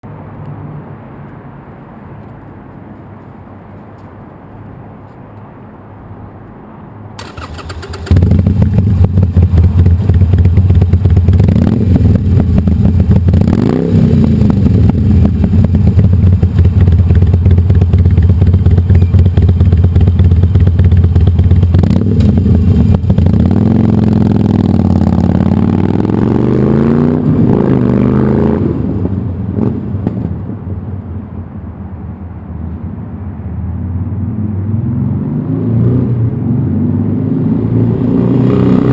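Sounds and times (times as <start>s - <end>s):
motorcycle engine idling and revving: 7.2s - 31.6s, 33.7s - 38.9s.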